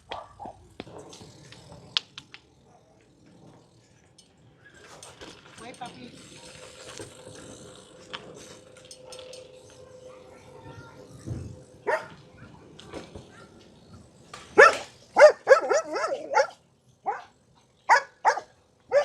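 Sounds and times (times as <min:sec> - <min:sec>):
puppy barking: 0:11.9 - 0:12.1, 0:14.6 - 0:17.3, 0:17.9 - 0:19.0.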